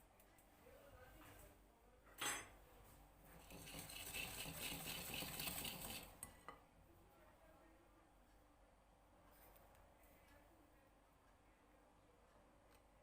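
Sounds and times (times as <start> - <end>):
utensil stirring in bowl: 3.3 - 6.4.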